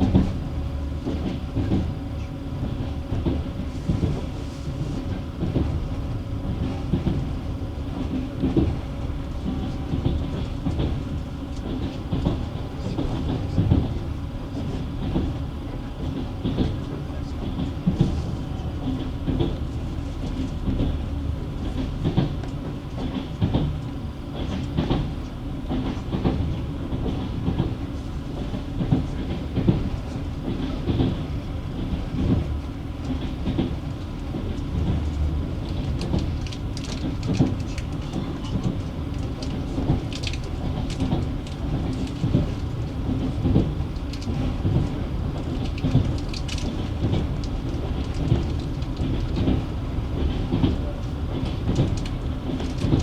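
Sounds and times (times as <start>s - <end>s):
train wheels clattering over rail joints: 5.0s - 53.0s.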